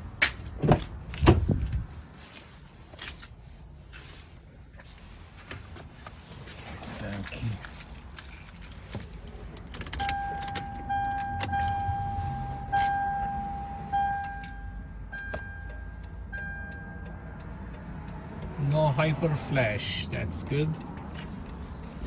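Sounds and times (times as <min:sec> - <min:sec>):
turn signal clicking: 0:09.6 - 0:18.9, 0:20.7 - 0:22.0
electronic warning tone: 0:10.0 - 0:17.1.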